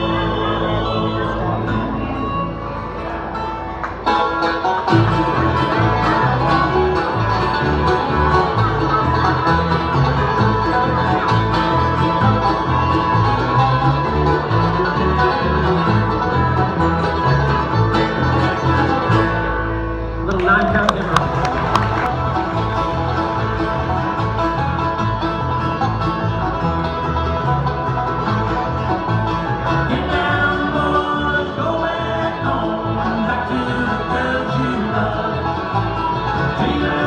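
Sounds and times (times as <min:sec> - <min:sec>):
banjo: 0:00.0 - 0:37.0
bass line: 0:00.0 - 0:37.0
bluegrass music: 0:00.0 - 0:37.0
guitar: 0:00.0 - 0:37.0.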